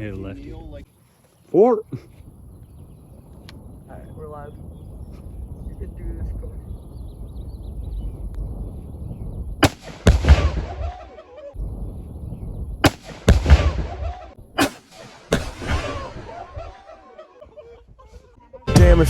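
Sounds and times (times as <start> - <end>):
explosion boom with rumbling decay: 2.3 - 16.9
rifle shot crack: 9.6 - 11.1, 12.8 - 16.8.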